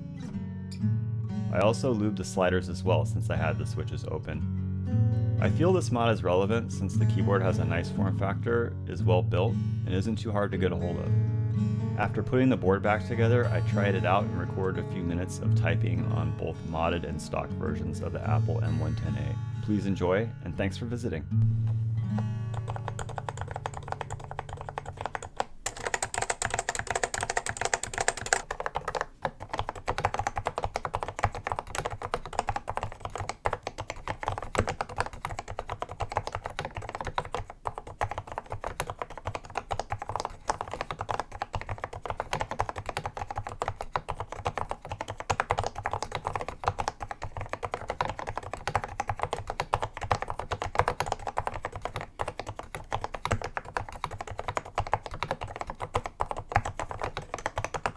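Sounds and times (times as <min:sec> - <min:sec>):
fast typing on mechanical keyboard: 0:22.2 - 0:57.9.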